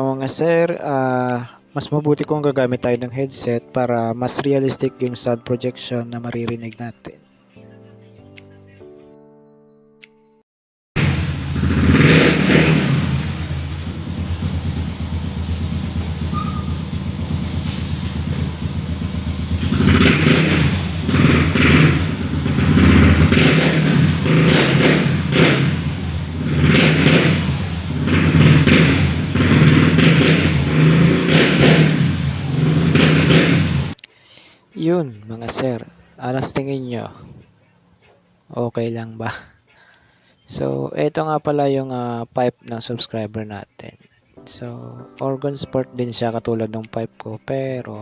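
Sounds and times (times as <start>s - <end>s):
motorcycle engine idling and revving: 11.0s - 34.0s, 35.4s - 37.6s.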